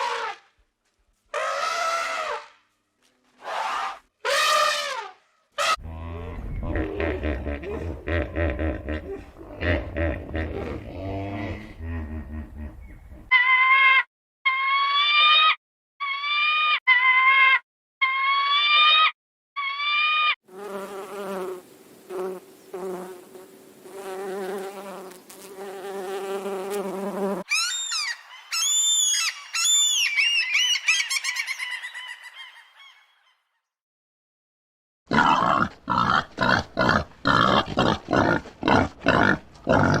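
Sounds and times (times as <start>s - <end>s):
insect buzzing hum: 20.5s - 27.5s
high arching chirps: 27.5s - 32.6s.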